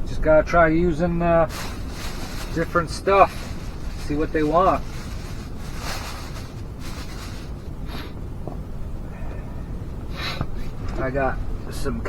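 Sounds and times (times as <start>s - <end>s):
wind buffeting shelter: 0.0s - 12.0s
short rustles: 1.0s - 9.5s.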